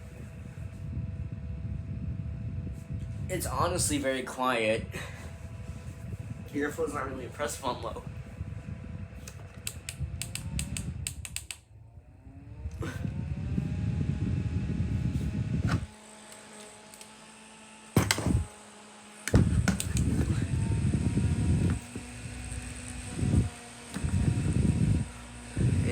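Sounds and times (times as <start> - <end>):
wind noise on microphone: 0.0 - 16.0, 18.0 - 18.5, 19.3 - 25.9
small fan motor running: 0.0 - 25.9
fan clicks: 9.2 - 11.7, 15.7 - 17.2, 19.2 - 20.6.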